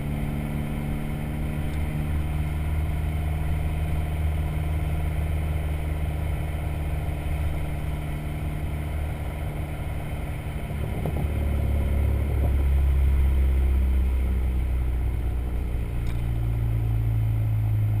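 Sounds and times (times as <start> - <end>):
turbocharged car engine running: 0.0 - 18.0
exhaust pops and crackles: 16.0 - 16.3.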